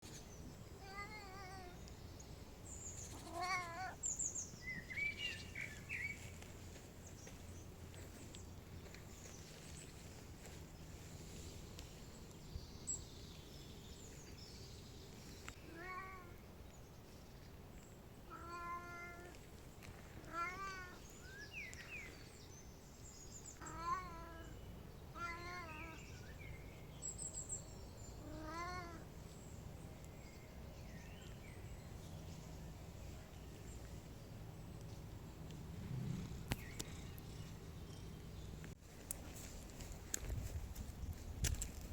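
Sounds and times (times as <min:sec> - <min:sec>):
cat meowing: 0:00.8 - 0:01.8, 0:03.1 - 0:04.0, 0:20.3 - 0:21.0, 0:23.6 - 0:24.5, 0:25.2 - 0:26.0, 0:28.2 - 0:29.0.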